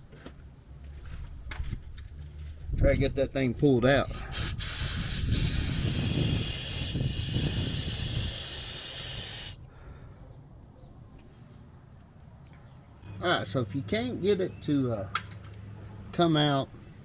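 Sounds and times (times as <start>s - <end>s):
hiss of escaping air: 4.2s - 9.6s.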